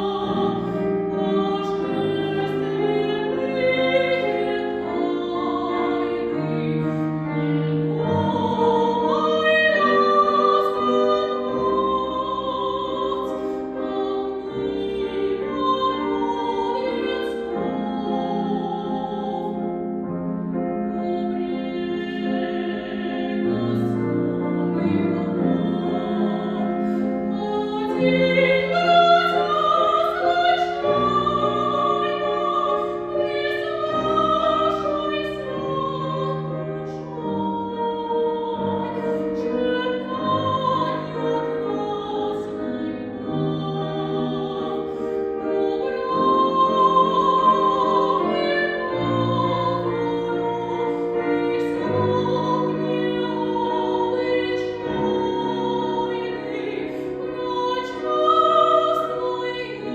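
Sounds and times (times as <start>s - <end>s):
piano accompaniment: 0.0s - 59.9s
woman singing operatically: 21.0s - 44.8s, 45.4s - 59.9s.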